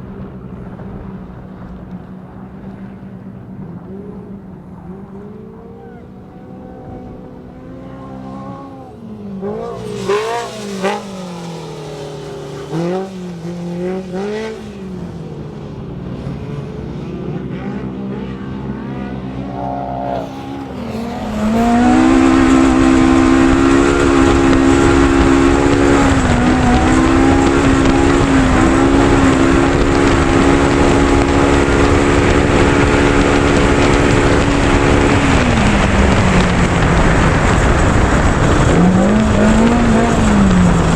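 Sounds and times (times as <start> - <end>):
engine revving: 0.0 - 40.9
loud rushing noise: 7.2 - 16.5, 19.2 - 40.9.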